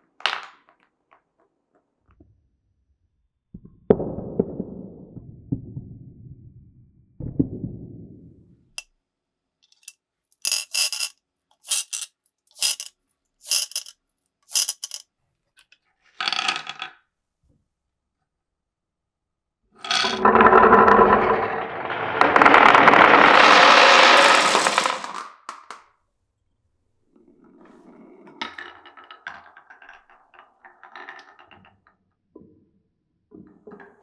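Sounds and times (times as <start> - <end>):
marbles rolling on wooden track: 9.8 - 11.1, 11.7 - 12.9, 13.5 - 13.9, 14.5 - 15.0, 19.9 - 25.2
bright clattering clinks: 10.5 - 11.1, 11.7 - 12.9, 13.5 - 13.9, 14.5 - 15.0.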